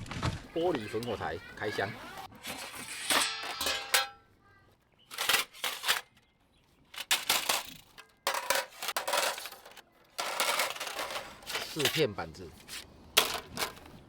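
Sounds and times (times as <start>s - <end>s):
metal scraping rattle: 2.4s - 4.2s, 7.0s - 13.9s
metal panels clanking: 2.5s - 4.2s
metal panels clattering: 2.5s - 4.2s.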